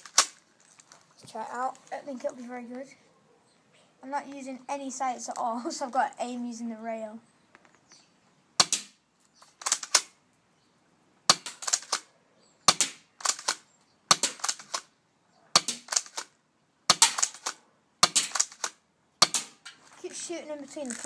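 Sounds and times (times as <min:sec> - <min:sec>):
airsoft shotgun firing: 0:08.6 - 0:09.0, 0:12.7 - 0:14.8, 0:15.6 - 0:16.3, 0:16.9 - 0:19.6.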